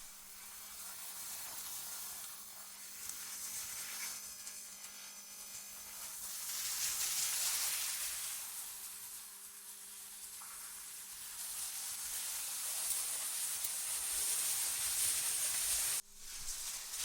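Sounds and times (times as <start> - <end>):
synthetic wind-like hiss: 14.7 - 17.0.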